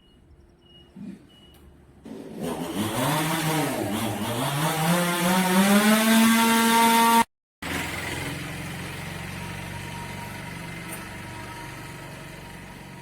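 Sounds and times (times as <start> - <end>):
chainsaw revving: 2.0 - 13.0
small engine idling: 7.6 - 13.0.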